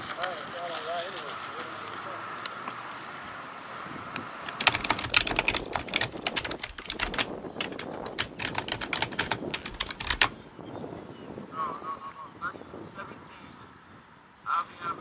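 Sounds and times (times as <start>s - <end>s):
rapid clicking and tapping: 4.4s - 10.4s.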